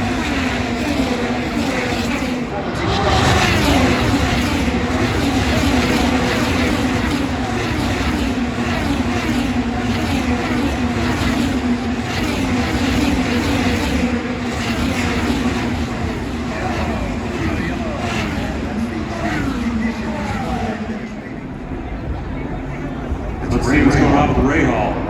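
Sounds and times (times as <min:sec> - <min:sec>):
engine and tyre noise: 0:00.0 - 0:25.0
race cars passing: 0:00.0 - 0:25.0.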